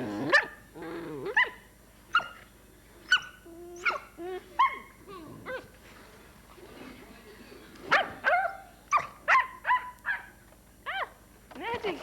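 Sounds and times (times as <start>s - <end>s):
puppy whining: 3.1s - 5.7s
puppy yelping: 3.1s - 5.7s, 10.9s - 11.2s.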